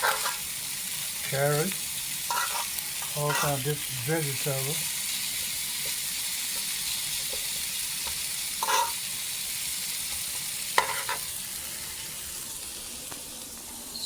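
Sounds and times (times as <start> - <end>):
utensil scraping pan: 0.0 - 0.5, 2.3 - 3.6, 8.6 - 9.0, 10.8 - 11.3
fried rice sizzling in skillet: 0.0 - 14.0.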